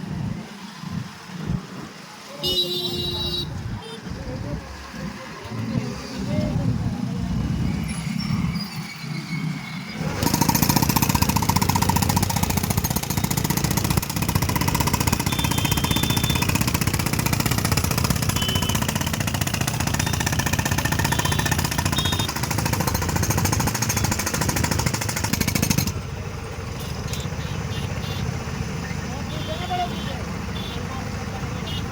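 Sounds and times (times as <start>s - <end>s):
jackhammer hammering: 10.0s - 28.2s.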